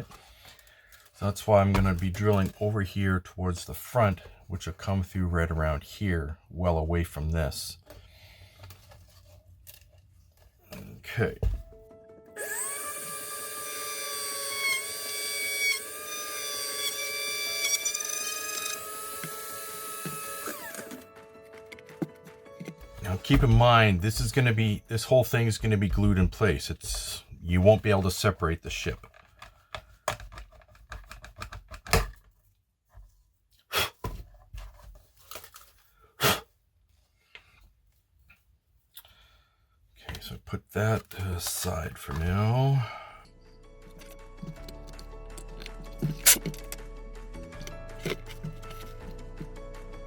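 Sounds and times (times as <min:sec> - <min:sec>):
plastic parts clicking and knocking: 0:00.0 - 0:02.7, 0:19.2 - 0:23.6, 0:28.9 - 0:32.4, 0:41.0 - 0:42.6, 0:43.9 - 0:46.8, 0:47.5 - 0:49.5
small electric drill whining: 0:12.4 - 0:21.1.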